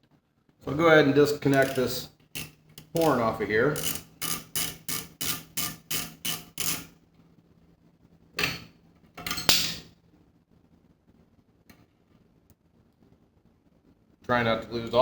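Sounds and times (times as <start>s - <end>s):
ratchet wrench ratcheting: 1.5s - 3.2s, 3.8s - 6.9s.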